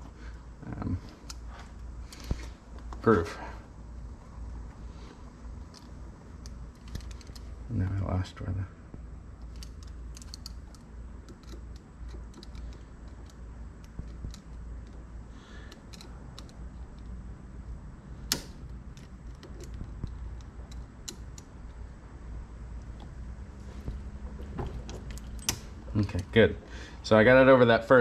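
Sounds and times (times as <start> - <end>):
small clicks and creaks of rubber: 9.4 - 17.2.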